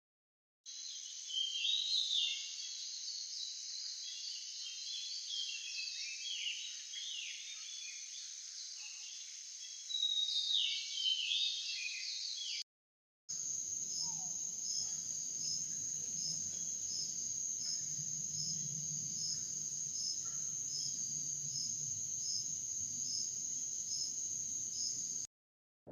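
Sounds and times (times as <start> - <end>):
high insect chorus: 13.3 - 25.3
birds calling with falling whistles: 13.8 - 18.6.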